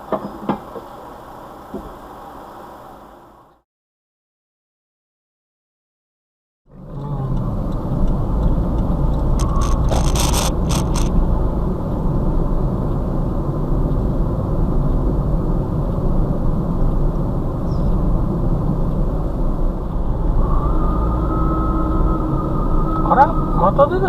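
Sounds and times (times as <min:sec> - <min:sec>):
road and engine noise in car: 0:00.0 - 0:03.6, 0:06.7 - 0:24.0
clicks or rattles: 0:09.3 - 0:11.1.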